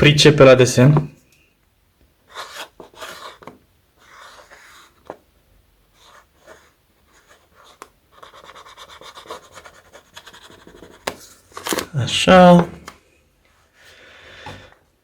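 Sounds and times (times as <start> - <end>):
marker scratching on balloon: 2.3 - 5.2, 6.0 - 11.2.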